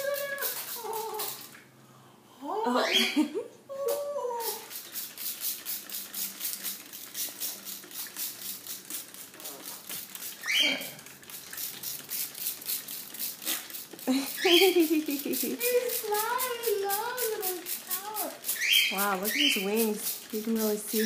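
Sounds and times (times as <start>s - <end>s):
spray bottle squirting: 0.0s - 1.6s, 4.4s - 21.0s
parrot calling: 2.7s - 4.7s, 10.3s - 11.0s, 14.1s - 14.8s, 18.4s - 19.8s.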